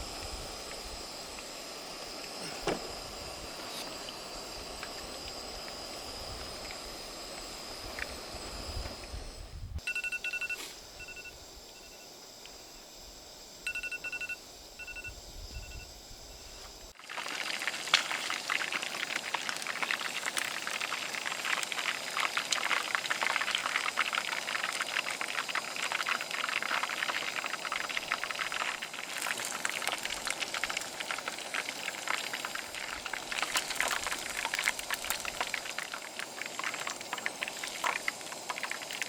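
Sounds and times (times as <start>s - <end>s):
kitchen timer beeps: 9.8s - 12.1s, 13.7s - 15.9s
chicken frying in hot oil: 16.9s - 39.0s.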